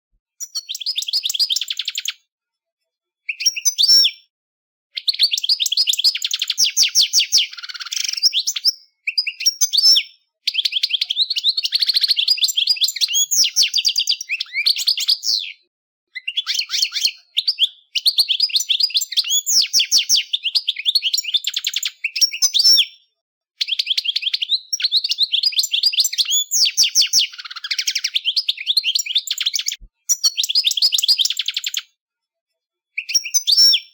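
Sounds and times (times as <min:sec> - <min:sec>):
goldfinch singing trills: 0:00.4 - 0:02.2.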